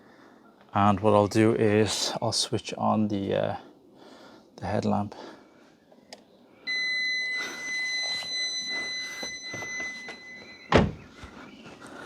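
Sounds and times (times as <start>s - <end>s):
car warning buzzer: 6.7s - 11.0s
car door shutting: 10.7s - 11.1s.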